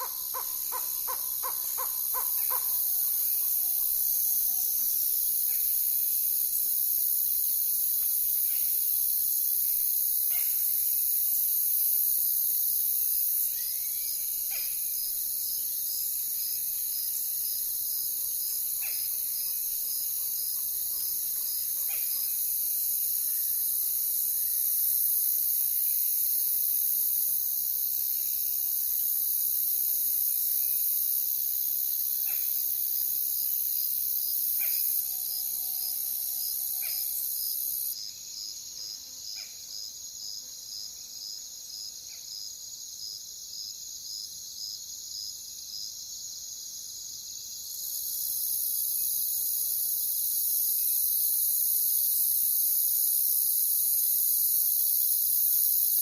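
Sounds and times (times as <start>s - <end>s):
insect chirping in pulses: 0.0s - 38.5s
crickets trilling: 0.0s - 40.4s, 47.4s - 56.0s.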